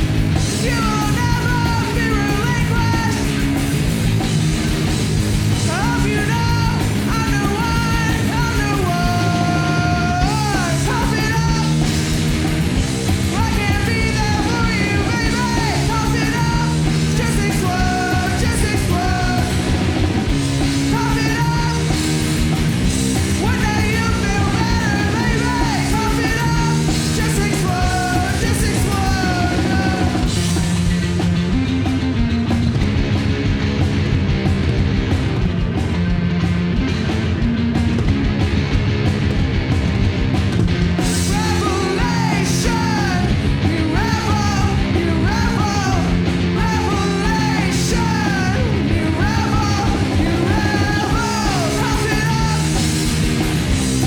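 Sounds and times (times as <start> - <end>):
bass guitar: 0.0 - 54.0
drums: 0.0 - 54.0
electric guitar: 0.0 - 54.0
woman singing and yelling: 41.3 - 52.7.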